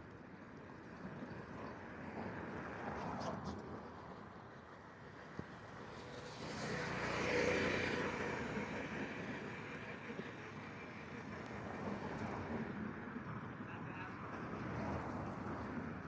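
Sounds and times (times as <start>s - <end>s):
road traffic noise: 5.6s - 16.0s.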